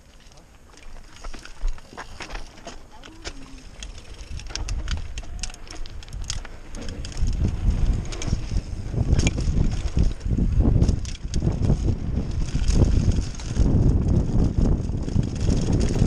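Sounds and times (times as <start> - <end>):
bike chain and frame rattling: 0.0 - 16.0
wind buffeting microphone: 3.1 - 16.0
low rumble: 3.4 - 16.0.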